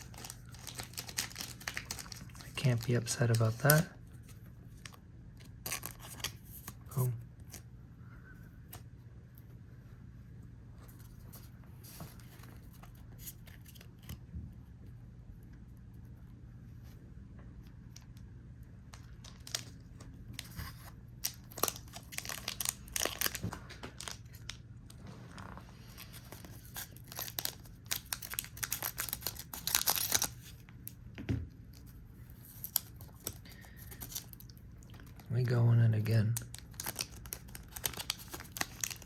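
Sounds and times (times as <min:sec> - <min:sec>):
foil wrapper tearing and crinkling: 0:00.0 - 0:03.9, 0:05.5 - 0:06.7, 0:19.0 - 0:20.6, 0:21.2 - 0:24.6, 0:25.9 - 0:30.7, 0:32.4 - 0:35.4, 0:36.4 - 0:39.0.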